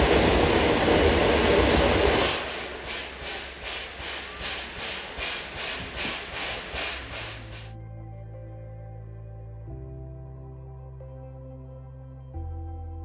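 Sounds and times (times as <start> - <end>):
train rushing noise: 0.0 - 7.7
train wheels clickety-clack: 0.0 - 7.7.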